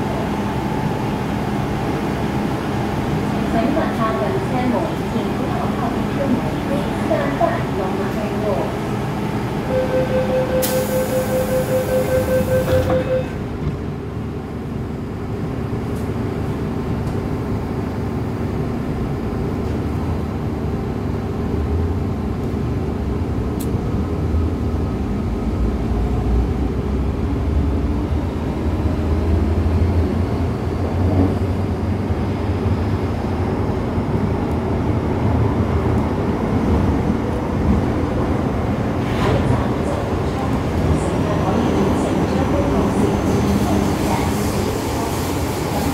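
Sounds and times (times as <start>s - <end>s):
train rumbling: 0.0s - 45.9s
door-closing warning beeps: 9.7s - 13.4s.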